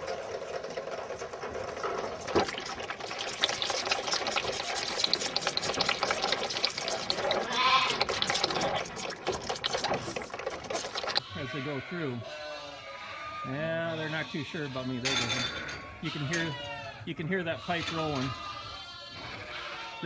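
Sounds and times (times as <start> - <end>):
knocks and rustles in a pen: 0.0 - 3.7, 7.3 - 11.4
calf calling: 11.2 - 20.0.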